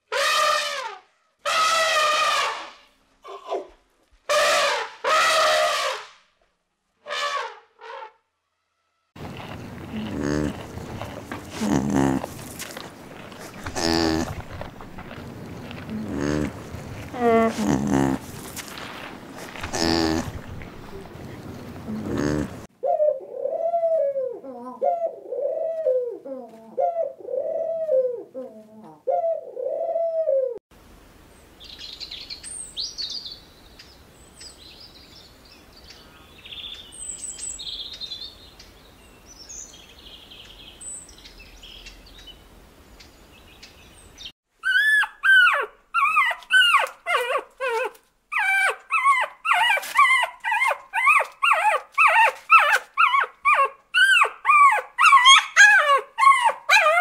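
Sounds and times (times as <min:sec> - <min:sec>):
puppies yelping and whimpering: 0:44.6 - 0:57.0.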